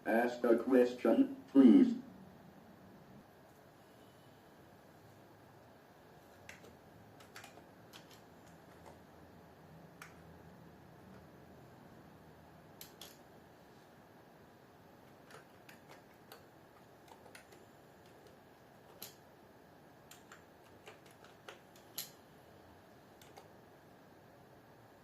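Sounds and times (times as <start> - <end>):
faint steady hiss: 0.0 - 25.0
computer keyboard keystrokes: 6.4 - 9.0, 12.8 - 13.2, 15.0 - 19.2, 20.1 - 22.2, 23.2 - 23.5.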